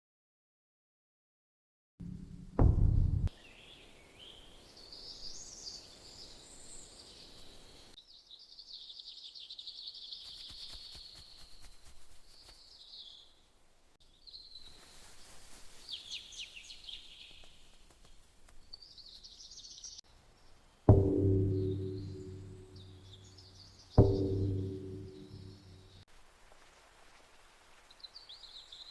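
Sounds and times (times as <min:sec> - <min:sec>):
faint forest ambience: 0:02.0 - 0:28.9
songbirds chirping and trilling: 0:03.3 - 0:11.7, 0:12.4 - 0:26.0.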